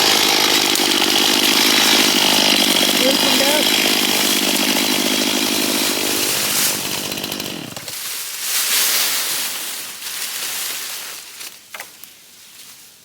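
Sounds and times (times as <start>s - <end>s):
chainsaw engine running: 0.0s - 8.0s.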